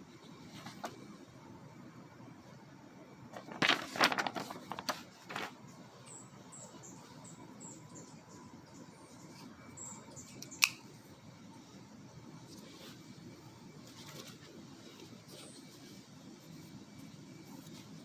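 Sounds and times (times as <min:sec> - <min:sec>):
rustling: 0:03.4 - 0:05.6, 0:13.8 - 0:16.7
pocket knife clicks: 0:10.4 - 0:10.8.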